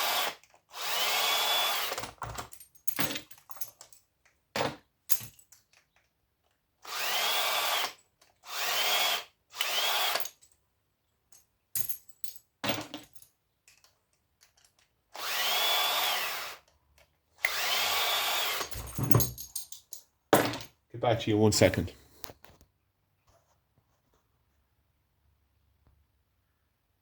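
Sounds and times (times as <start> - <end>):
power drill spinning: 0.0 - 2.5, 6.8 - 10.3, 15.1 - 16.7, 17.4 - 19.3
clicks and knocks of parts: 1.9 - 6.6, 11.3 - 15.1, 16.6 - 17.6, 18.6 - 20.8.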